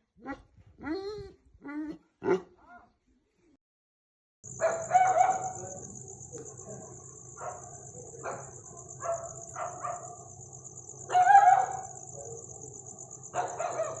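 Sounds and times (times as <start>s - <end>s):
dogs barking: 4.5s - 10.4s, 11.0s - 14.0s
high-pitched hiss: 4.5s - 14.0s.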